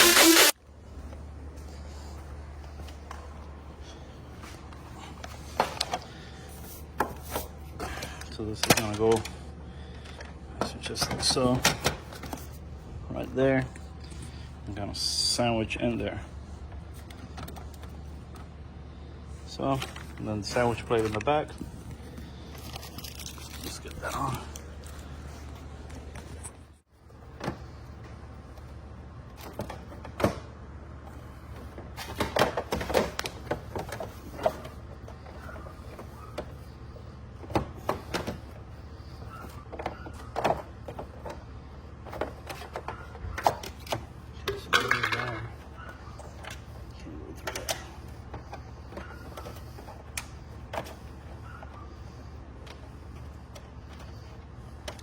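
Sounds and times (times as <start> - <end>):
plastic parts clicking and rattling: 39.7 - 45.6.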